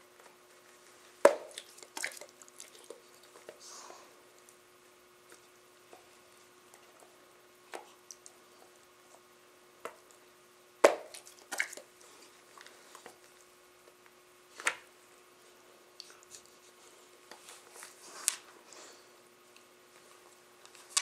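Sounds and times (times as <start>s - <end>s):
dogs mouthing and smacking: 1.5s - 3.6s.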